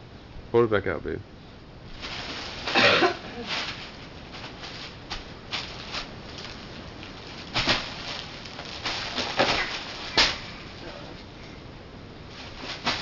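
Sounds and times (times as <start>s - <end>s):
bubble wrap crinkling and snapping: 1.9s - 10.8s, 12.3s - 13.0s.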